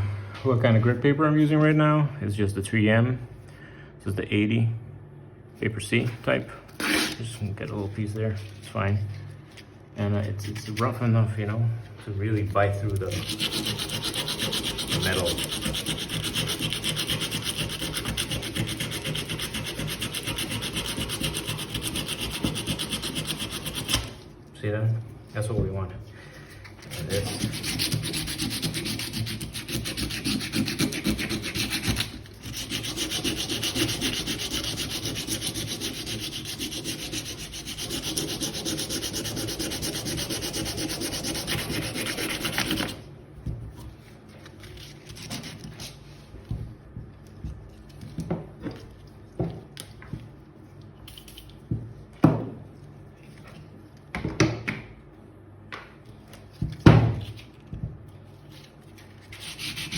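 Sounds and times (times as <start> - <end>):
sandpaper scraping on metal: 13.0 - 24.1, 26.9 - 43.0, 59.3 - 59.9.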